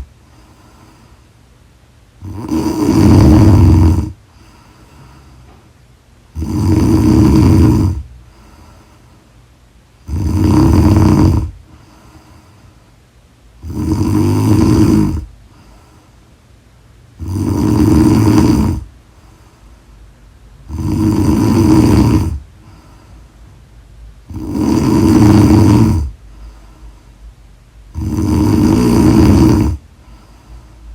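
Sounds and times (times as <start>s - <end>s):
woman snoring loudly: 2.2s - 4.2s, 6.3s - 8.1s, 10.0s - 11.6s, 13.6s - 15.3s, 17.2s - 18.9s, 20.6s - 22.4s, 24.2s - 26.2s, 27.9s - 29.8s.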